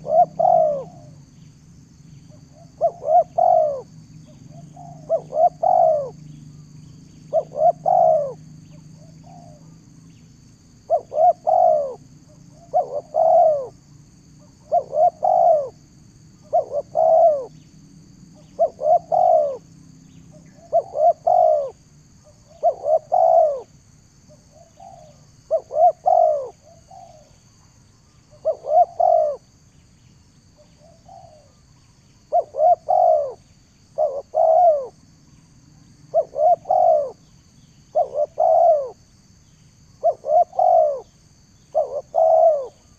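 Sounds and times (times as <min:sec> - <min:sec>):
doves cooing: 0:00.0 - 0:01.3, 0:02.3 - 0:06.7, 0:07.3 - 0:09.8, 0:10.9 - 0:17.7, 0:18.3 - 0:23.7, 0:24.3 - 0:27.4, 0:28.3 - 0:29.6, 0:30.6 - 0:35.0, 0:36.0 - 0:37.3, 0:37.9 - 0:39.1, 0:40.0 - 0:42.9.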